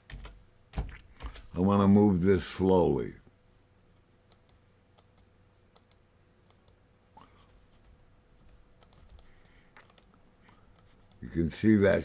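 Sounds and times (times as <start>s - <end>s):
faint clicks and handling noise: 3.9s - 11.3s.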